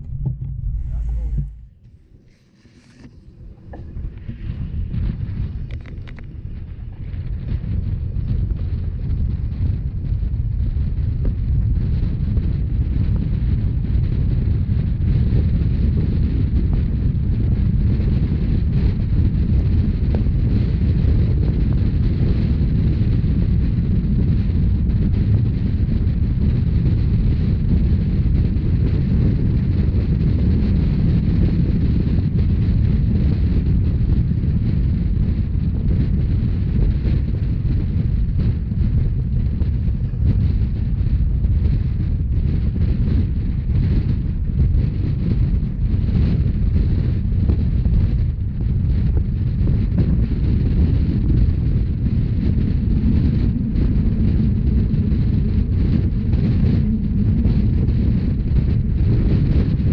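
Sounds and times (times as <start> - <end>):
train rumbling: 0.0 - 8.8
wind buffeting microphone: 0.0 - 59.9.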